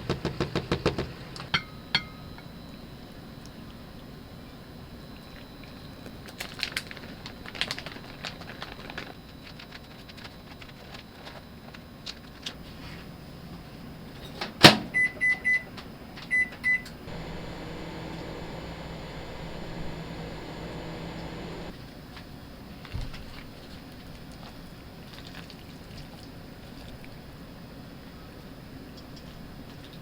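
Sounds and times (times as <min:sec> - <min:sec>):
microwave oven humming: 0:13.7 - 0:21.7
keypad beeps: 0:15.0 - 0:15.6, 0:16.3 - 0:16.9.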